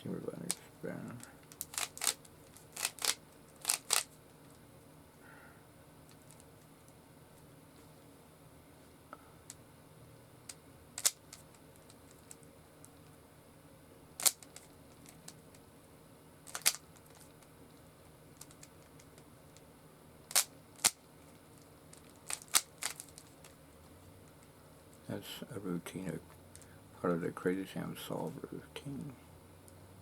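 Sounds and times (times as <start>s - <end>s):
rubik's cube clicking: 1.5s - 4.1s, 11.0s - 11.5s, 14.2s - 15.2s, 16.5s - 17.2s, 20.3s - 21.0s, 21.9s - 23.3s.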